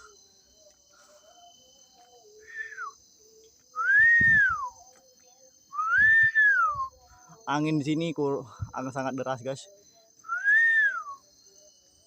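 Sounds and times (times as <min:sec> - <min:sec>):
night insects trilling: 0:00.0 - 0:12.0
rising and falling whistle: 0:03.8 - 0:04.8, 0:05.8 - 0:06.9, 0:10.3 - 0:11.2.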